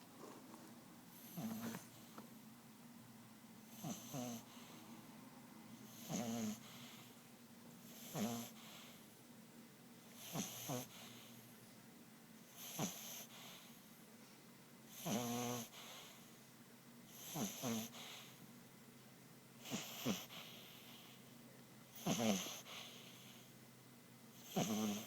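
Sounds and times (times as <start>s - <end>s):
puppy snoring: 1.1s - 2.2s, 3.7s - 4.8s, 5.8s - 7.2s, 7.8s - 9.0s, 10.1s - 11.5s, 12.4s - 13.9s, 14.9s - 16.4s, 17.1s - 18.4s, 19.6s - 21.2s, 21.9s - 23.5s, 24.3s - 25.0s.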